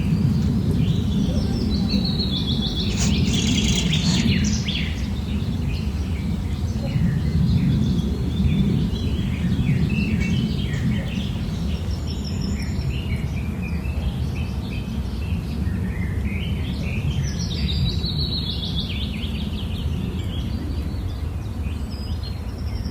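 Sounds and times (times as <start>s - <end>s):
bird chirping: 0.0s - 12.0s
low background rumble: 0.0s - 12.0s.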